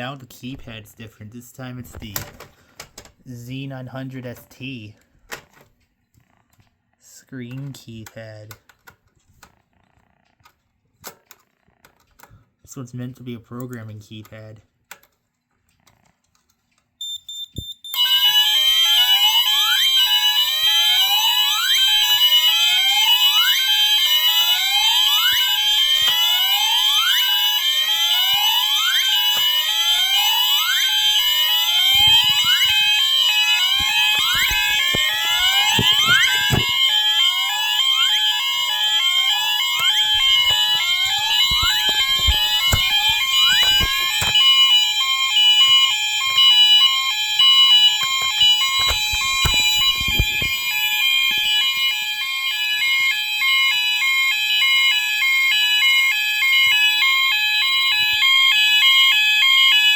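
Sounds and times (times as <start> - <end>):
keypad beeps: 17.0 - 18.0, 33.8 - 36.8, 39.8 - 44.7, 47.7 - 51.5
steady and pulsing alarm tones: 17.8 - 59.9
rising alarm whoop: 18.0 - 53.8.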